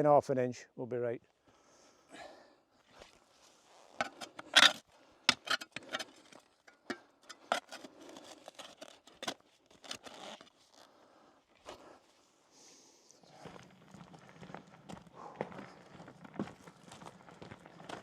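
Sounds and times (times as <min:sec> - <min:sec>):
clicks knocks and scrapes: 0:03.9 - 0:10.6.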